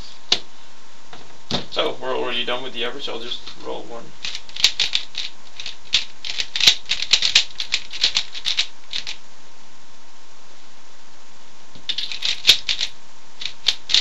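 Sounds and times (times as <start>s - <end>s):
microphone hiss: 0.0s - 14.0s
puzzle cube plastic clicks: 4.2s - 9.2s, 11.8s - 14.0s.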